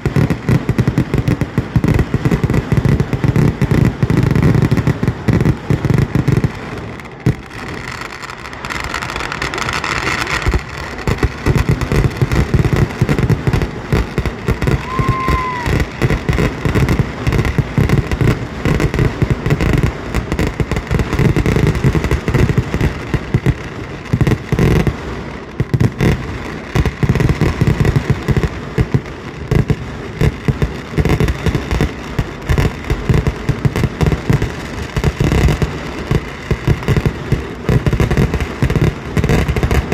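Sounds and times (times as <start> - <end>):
firework explosions: 0.0 - 39.9
firework whistle: 13.5 - 16.9.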